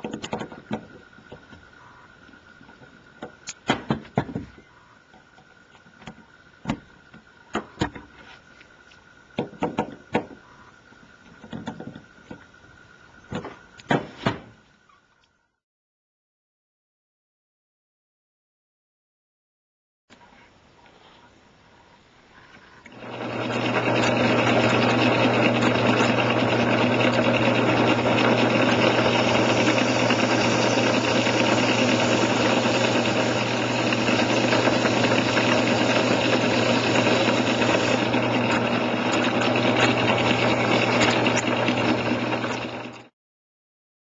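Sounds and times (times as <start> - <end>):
mains hum: 0.1 - 15.6
electric grinder motor running: 22.9 - 43.1.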